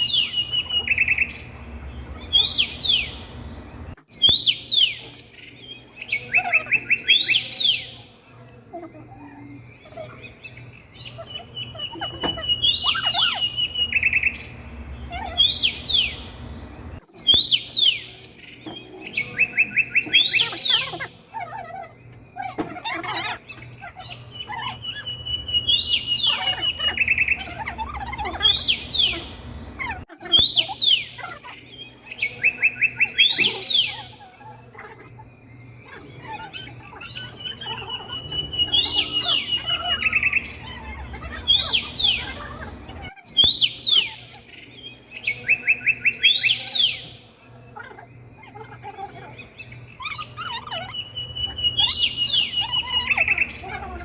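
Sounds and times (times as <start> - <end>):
downward-sweeping bird chirps: 0.0 - 54.0
high bird whistle and trill: 17.1 - 47.2.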